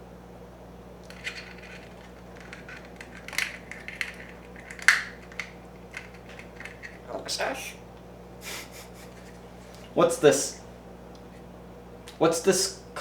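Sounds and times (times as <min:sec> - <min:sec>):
small toys clicking together: 0:01.1 - 0:07.0.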